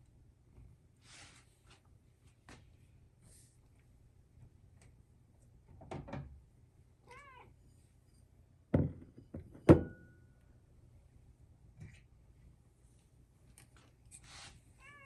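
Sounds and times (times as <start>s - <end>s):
cat meowing: 7.0s - 7.5s, 14.8s - 15.0s.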